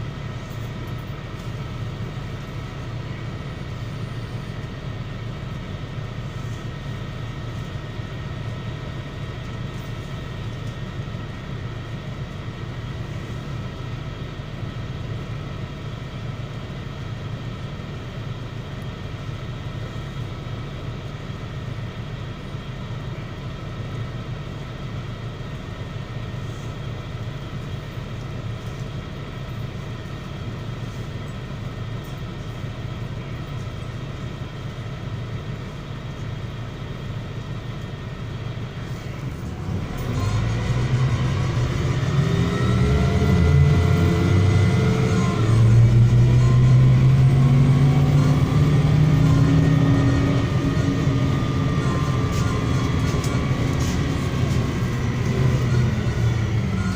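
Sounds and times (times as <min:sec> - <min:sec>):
bus engine drone: 0:00.0 - 0:56.9
faint whining tones: 0:26.4 - 0:56.9.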